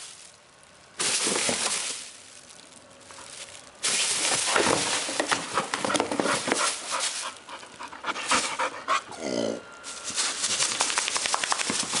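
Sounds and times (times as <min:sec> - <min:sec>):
cardboard box rustling: 0:03.2 - 0:07.4
puppy panting: 0:05.6 - 0:09.1
puppy burp: 0:09.1 - 0:09.7.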